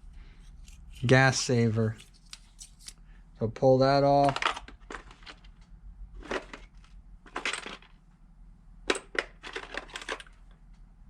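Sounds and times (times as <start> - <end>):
metal parts clicking and clinking: 4.2 - 5.5, 6.2 - 8.0, 8.9 - 10.5.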